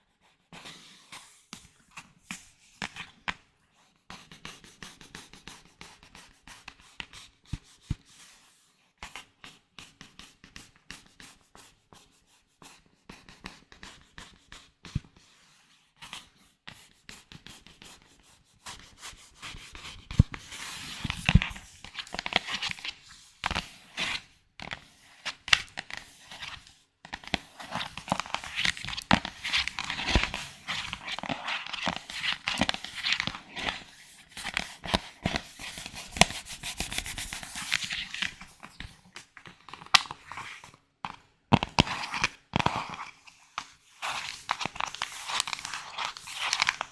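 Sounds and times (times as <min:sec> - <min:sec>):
hands handling small objects: 0:20.4 - 0:40.3, 0:44.0 - 0:46.9
fine crackling tapping and rubbing: 0:44.1 - 0:46.9.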